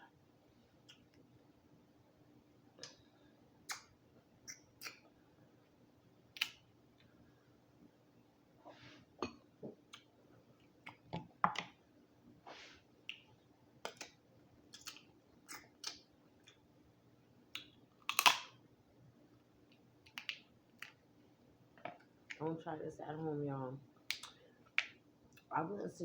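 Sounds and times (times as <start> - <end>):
crab shell cracking and chewing: 6.3 - 6.6, 13.8 - 16.6, 17.5 - 18.6, 19.7 - 21.0.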